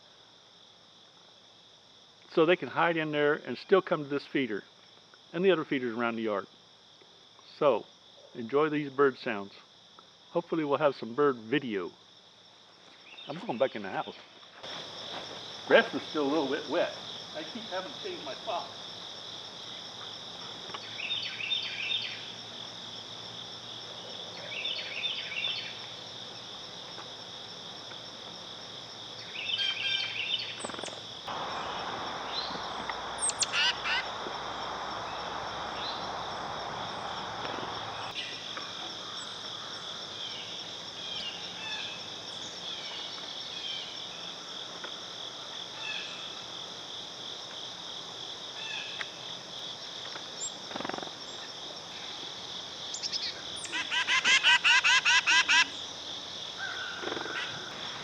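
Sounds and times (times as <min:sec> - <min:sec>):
crickets and insects chirring: 0:00.0 - 0:58.0
songbirds chirping: 0:12.8 - 0:14.5, 0:19.6 - 0:22.4, 0:23.7 - 0:26.1, 0:29.1 - 0:44.4
even hiss: 0:13.0 - 0:22.4, 0:30.8 - 0:39.7.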